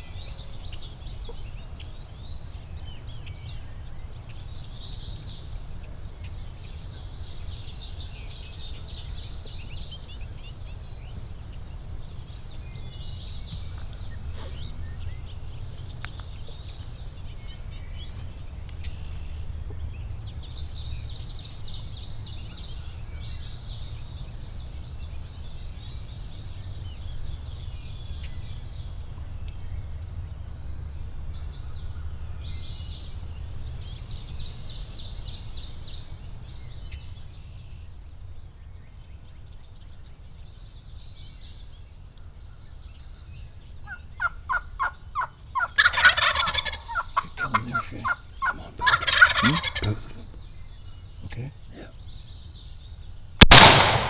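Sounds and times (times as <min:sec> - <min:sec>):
small birds trilling: 0:00.0 - 0:37.8, 0:42.6 - 0:54.0
steady low rumble: 0:00.0 - 0:39.8, 0:53.4 - 0:54.0
click: 0:53.4 - 0:54.0.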